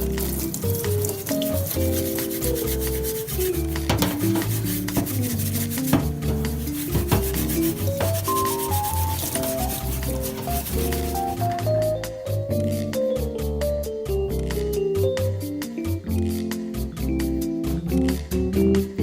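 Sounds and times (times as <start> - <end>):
rubbing scraping sounds: 0.0 - 11.8
background music: 0.0 - 19.0.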